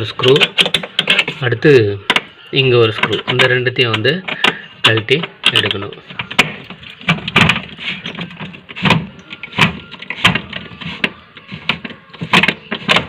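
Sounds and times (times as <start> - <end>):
screwdriver clicks and knocks: 0.3 - 1.4, 3.0 - 13.0.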